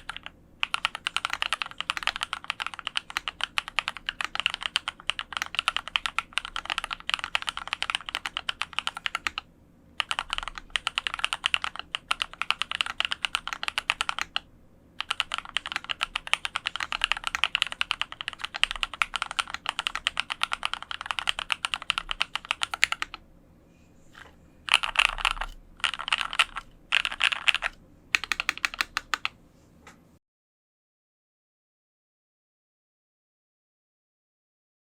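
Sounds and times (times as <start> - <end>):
mechanical keyboard typing: 0.0 - 23.2, 24.7 - 29.4.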